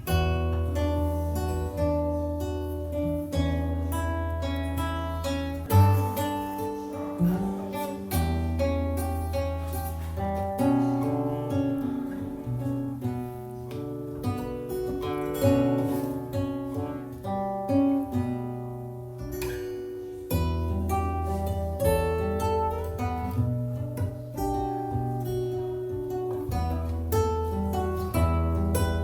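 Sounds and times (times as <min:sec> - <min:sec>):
plucked and strummed strings: 0:00.0 - 0:29.0.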